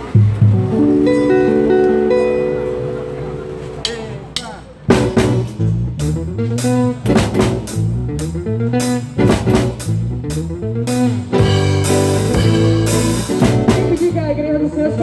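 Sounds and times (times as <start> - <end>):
bass: 0.0 - 15.0
plucked string chords: 0.0 - 15.0
drum kit beat: 3.8 - 15.0.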